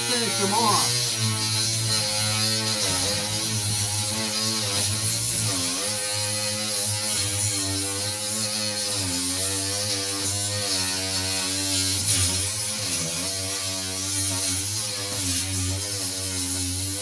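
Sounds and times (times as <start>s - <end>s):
die grinder grinding metal: 0.0s - 17.0s.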